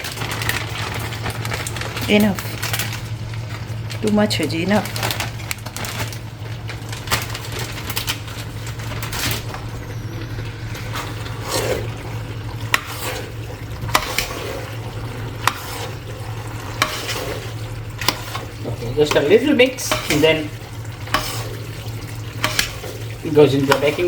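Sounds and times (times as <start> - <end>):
steady low hum: 0.0 - 24.0
sauce sizzling in a pan: 10.2 - 24.0
utensil clicking against pan: 17.9 - 20.4, 22.4 - 22.9, 23.6 - 24.0.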